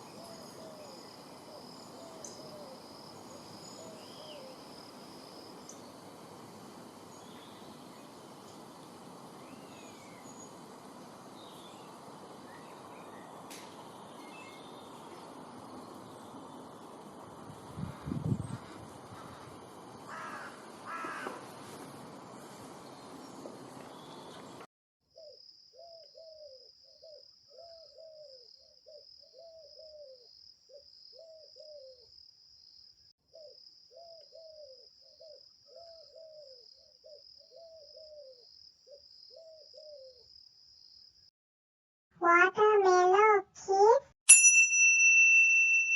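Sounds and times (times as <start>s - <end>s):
steady background hiss: 0.0s - 17.8s
high insect trill: 0.0s - 23.4s
faint high bird chirps: 11.4s - 16.8s.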